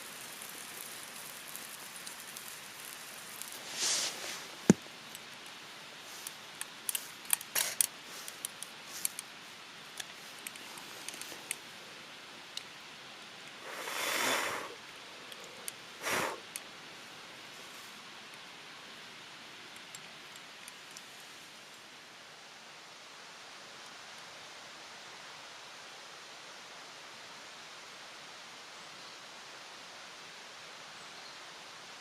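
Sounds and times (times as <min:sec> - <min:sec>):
steady hiss: 0:00.0 - 0:32.0
rustling or scraping: 0:03.4 - 0:04.8, 0:06.0 - 0:09.3.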